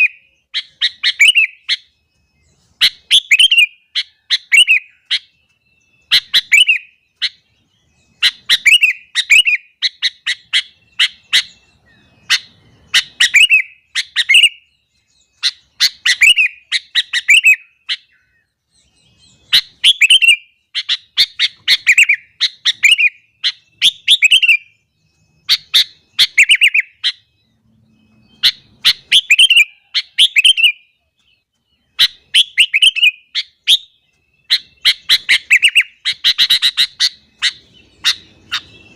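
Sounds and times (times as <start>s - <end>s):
bulbul singing: 0.0s - 38.9s.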